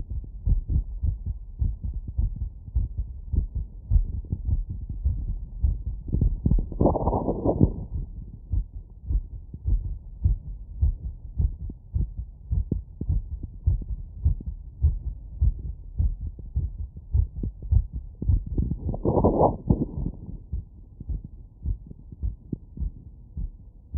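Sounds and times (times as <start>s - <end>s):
muffled heartbeat: 0.0s - 23.9s
rubbing noise: 6.4s - 8.0s, 18.6s - 20.4s.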